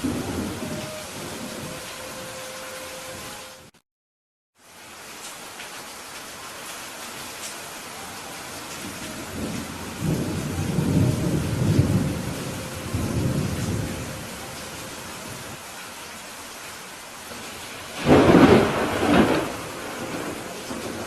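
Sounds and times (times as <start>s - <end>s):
thunder rumbling: 0.0s - 2.5s, 8.7s - 15.6s, 17.5s - 21.0s
steady rain falling: 0.0s - 3.8s, 4.6s - 21.0s.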